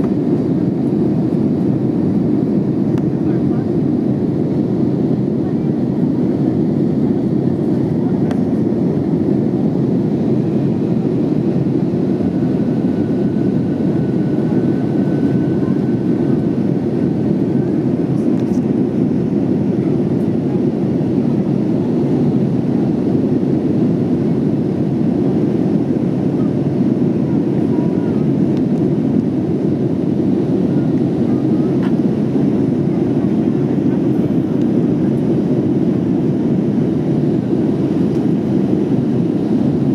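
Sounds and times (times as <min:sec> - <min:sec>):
airplane engines roaring in cabin: 0:00.0 - 0:39.9.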